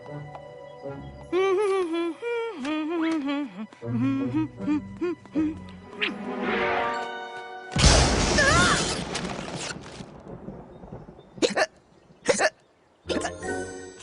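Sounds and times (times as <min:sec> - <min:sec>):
loud blast: 0:07.8 - 0:09.8.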